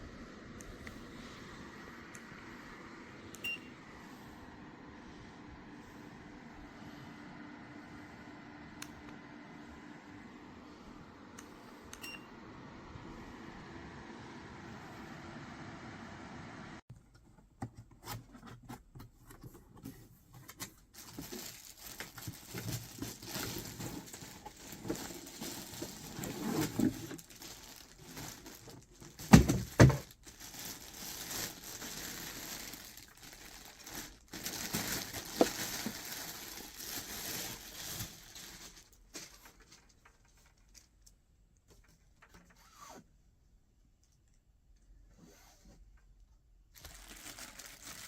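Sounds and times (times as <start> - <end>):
rustling and crinkling handling: 16.9 - 42.8, 46.0 - 48.0.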